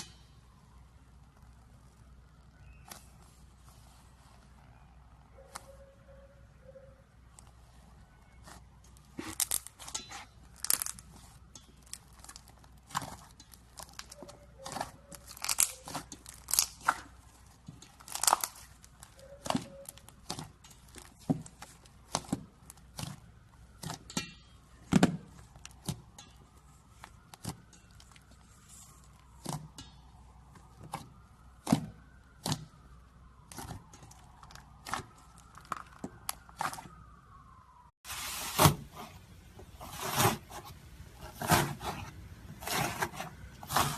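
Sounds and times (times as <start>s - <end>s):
slime crackling and popping: 8.2s - 37.1s.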